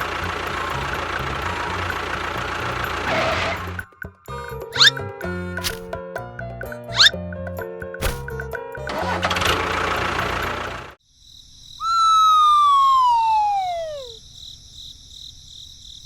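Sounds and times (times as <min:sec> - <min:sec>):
falling whistle sound effect: 0:04.8 - 0:05.0, 0:06.9 - 0:07.2, 0:11.8 - 0:14.2.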